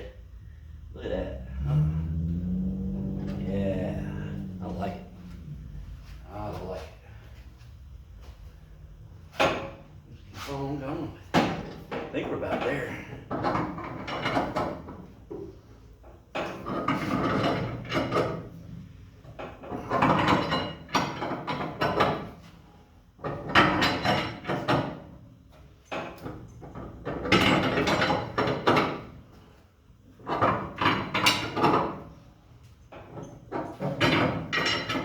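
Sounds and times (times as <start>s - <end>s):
wrench clattering and scraping: 32.8s - 35.0s.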